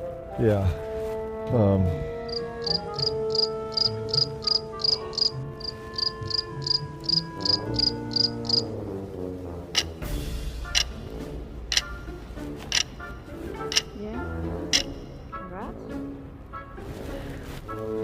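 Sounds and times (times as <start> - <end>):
background music with held notes: 0.0 - 18.0
cricket chirping: 2.2 - 8.7
sharp clicks: 9.8 - 10.0, 10.7 - 11.0, 11.7 - 12.1, 12.7 - 14.0, 14.7 - 15.2.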